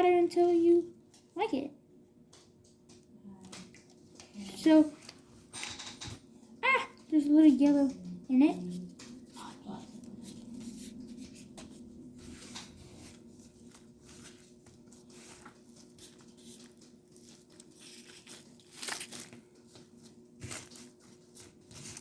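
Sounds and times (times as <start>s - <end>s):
steady low hum: 0.0s - 22.0s
sticky slime crackles: 6.6s - 22.0s.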